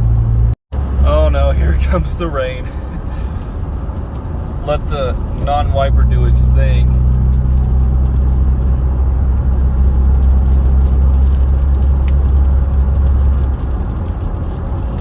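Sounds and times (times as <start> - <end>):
low engine drone: 0.0 - 3.8
road noise: 0.0 - 15.0.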